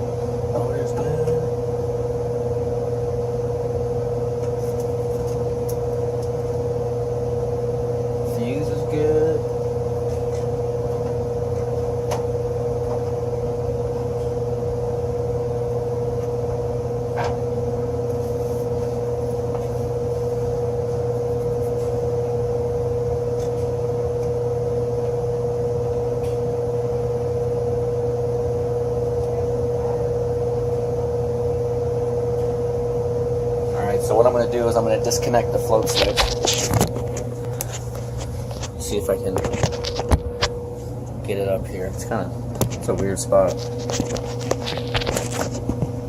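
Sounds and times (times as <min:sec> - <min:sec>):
hvac machine hum: 0:00.0 - 0:46.0.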